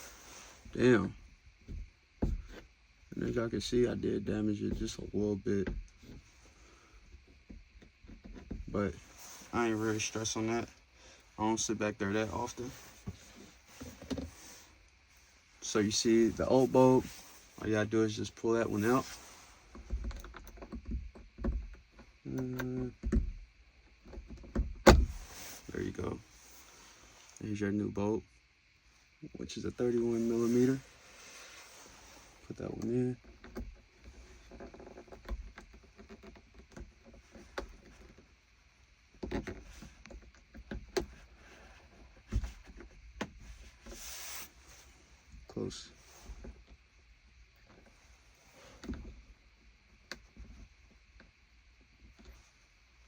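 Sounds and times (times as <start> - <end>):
rustle: 0.0 - 22.9, 24.9 - 27.6, 28.2 - 51.4.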